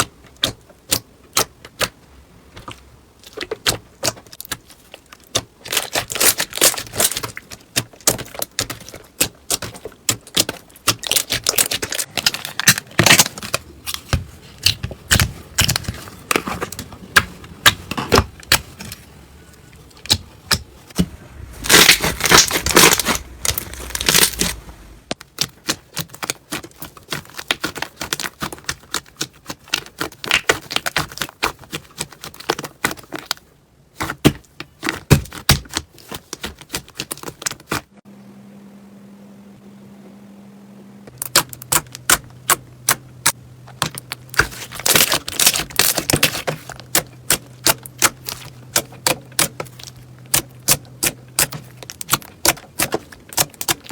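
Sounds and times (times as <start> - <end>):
slime crackling and popping: 2.6 - 16.8, 21.6 - 33.4, 41.2 - 53.9.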